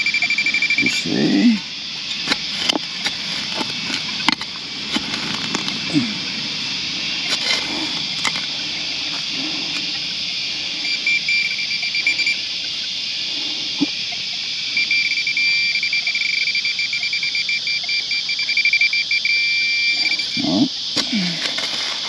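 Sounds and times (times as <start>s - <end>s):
pinpointer beeping rapidly: 0.0s - 0.9s, 10.8s - 12.4s, 14.8s - 20.4s
steady high hiss: 0.0s - 22.0s.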